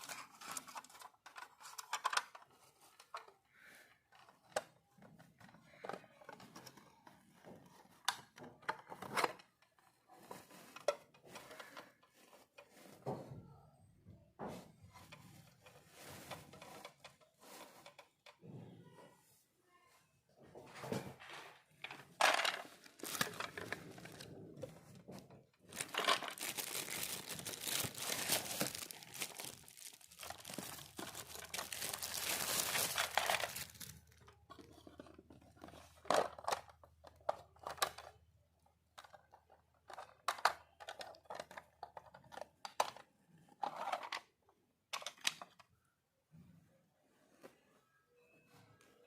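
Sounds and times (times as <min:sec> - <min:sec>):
packaging rustling and crinkling: 0:22.2 - 0:36.7.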